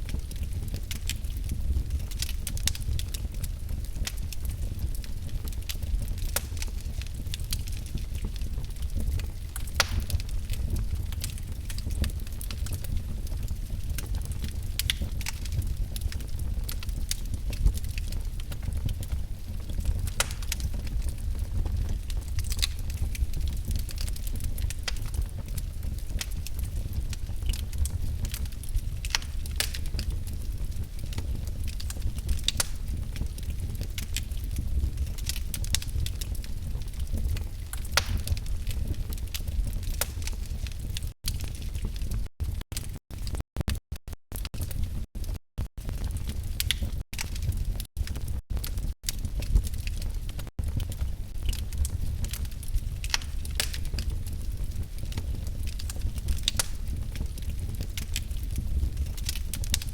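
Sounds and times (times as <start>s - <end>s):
low rumble of flames: 0.0s - 43.4s, 44.6s - 59.9s
wood fire crackling: 0.0s - 43.4s, 44.6s - 59.9s
sharp pops of fire: 6.3s - 6.7s, 9.6s - 10.3s, 19.8s - 20.7s, 28.2s - 30.1s, 31.8s - 33.0s, 37.8s - 39.0s, 39.8s - 40.5s, 53.0s - 54.1s, 55.8s - 57.0s.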